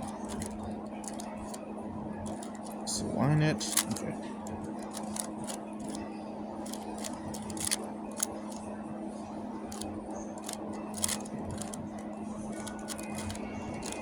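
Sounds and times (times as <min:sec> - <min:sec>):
puzzle cube clicking: 0:00.0 - 0:01.6, 0:02.3 - 0:02.8, 0:03.7 - 0:06.0, 0:06.6 - 0:08.4, 0:09.7 - 0:11.8, 0:12.6 - 0:14.0.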